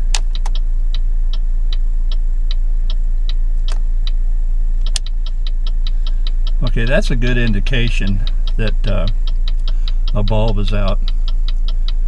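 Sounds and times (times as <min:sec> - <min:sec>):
steady low hum: 0:00.0 - 0:12.0
turn-signal flasher ticking: 0:00.0 - 0:12.0
sharp click: 0:00.1 - 0:00.6, 0:04.8 - 0:05.9.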